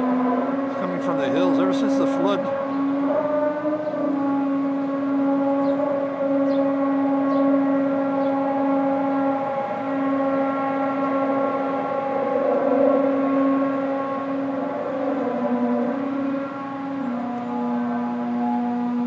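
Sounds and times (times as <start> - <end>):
low horn-like drone: 0.0 - 19.0.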